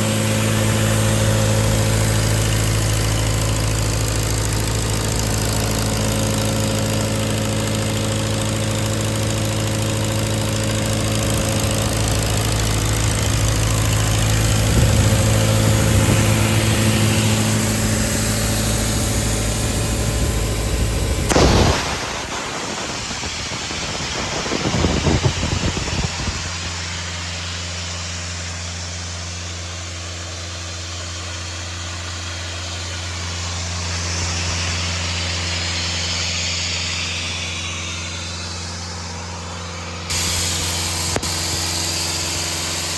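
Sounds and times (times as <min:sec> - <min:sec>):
loud burst: 0:00.0 - 0:27.2, 0:40.1 - 0:42.9
diesel engine running: 0:00.0 - 0:42.9
air hiss: 0:13.4 - 0:26.8, 0:40.1 - 0:42.9.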